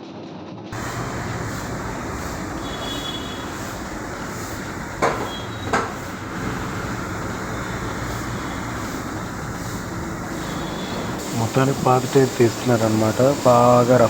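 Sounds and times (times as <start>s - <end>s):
sharp knocks: 5.0s - 6.1s.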